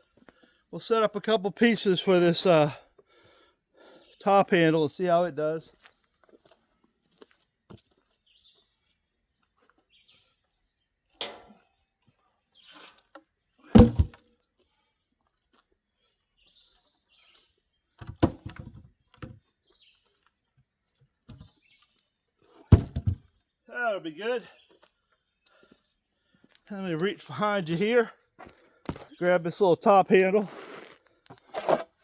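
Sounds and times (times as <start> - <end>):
firewood knocking and thudding: 13.8 - 14.2, 18.0 - 19.4, 22.6 - 23.3.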